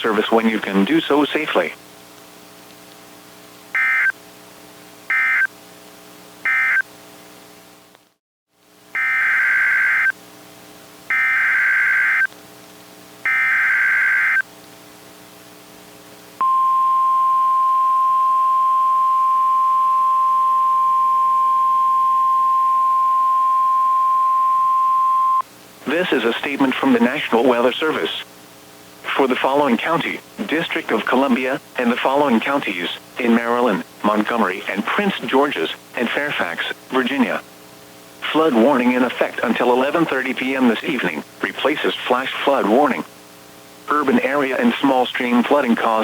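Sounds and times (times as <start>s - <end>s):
faint hum: 0.0s - 46.0s
steady warning alarm tone: 3.8s - 4.2s, 5.1s - 5.5s, 6.5s - 6.8s, 9.0s - 10.2s, 11.1s - 12.3s, 13.3s - 14.4s, 16.4s - 25.4s.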